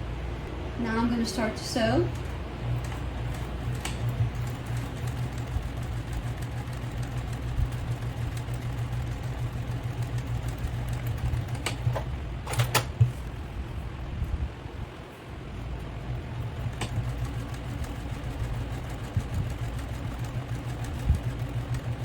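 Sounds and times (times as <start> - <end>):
sewing machine running: 1.9 - 12.9, 16.1 - 22.0.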